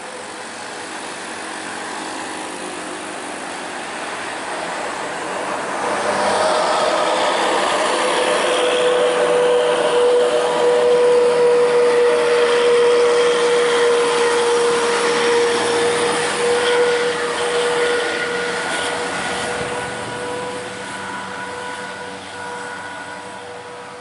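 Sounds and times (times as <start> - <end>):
street noise: 0.0 - 24.0
bus horn long steady note: 5.3 - 24.0.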